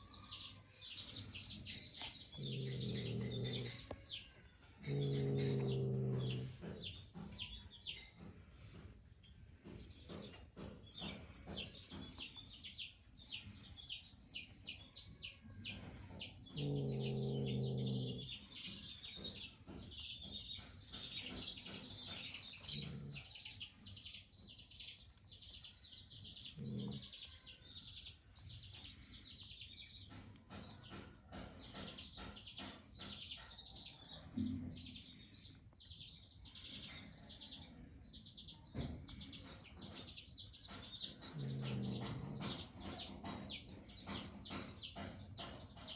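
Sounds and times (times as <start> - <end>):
drawn-out low animal call: 2.2 - 4.0, 4.8 - 6.8.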